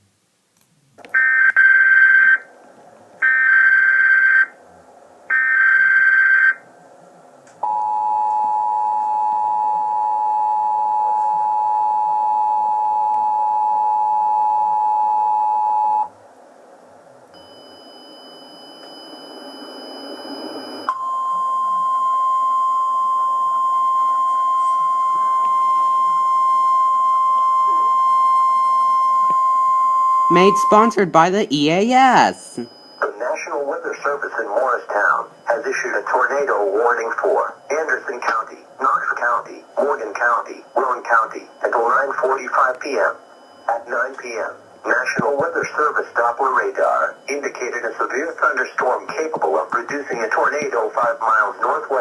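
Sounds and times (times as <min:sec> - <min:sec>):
two-tone attention signal: 0:17.4 - 0:33.1
steady alert tone: 0:30.3 - 0:32.7.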